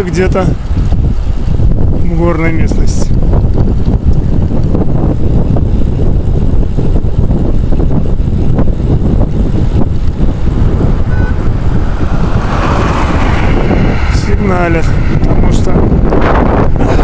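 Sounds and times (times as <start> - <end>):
wind buffeting microphone: 0.0 - 17.0
passing motor vehicle: 8.2 - 17.0.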